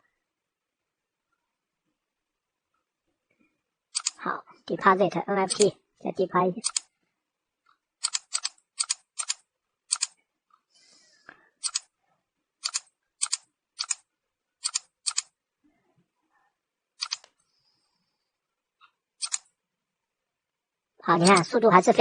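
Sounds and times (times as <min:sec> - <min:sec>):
computer mouse clicks: 0:03.9 - 0:04.2, 0:05.5 - 0:05.7, 0:06.6 - 0:06.9, 0:07.7 - 0:10.2, 0:11.6 - 0:11.9, 0:12.6 - 0:15.3, 0:17.0 - 0:17.4, 0:18.8 - 0:19.5, 0:21.2 - 0:21.5.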